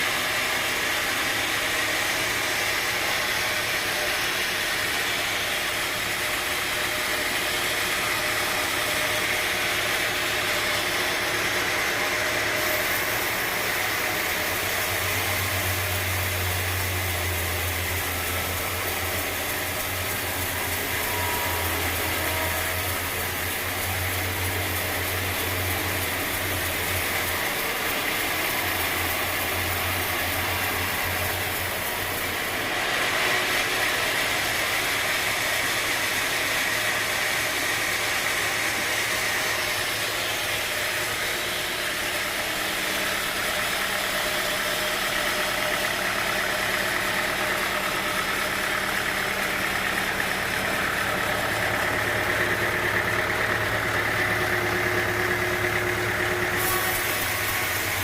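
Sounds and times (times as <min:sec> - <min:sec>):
machinery low hum: 0:00.0 - 0:58.0
bright hiss: 0:12.0 - 0:44.8, 0:53.6 - 0:58.0.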